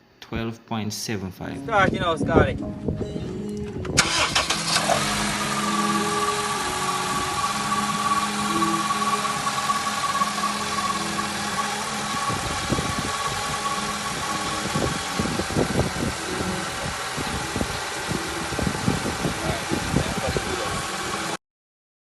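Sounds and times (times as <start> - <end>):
car engine idling: 3.8 - 21.4.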